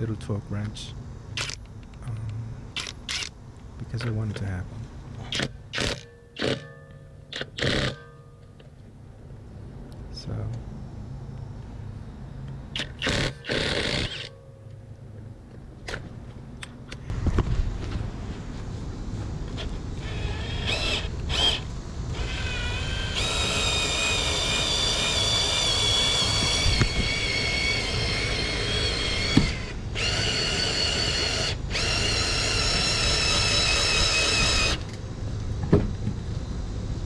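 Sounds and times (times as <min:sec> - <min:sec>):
power screwdriver motor whining: 0:02.8 - 0:03.3, 0:05.3 - 0:06.6, 0:07.4 - 0:08.0, 0:12.8 - 0:14.3, 0:20.0 - 0:34.9.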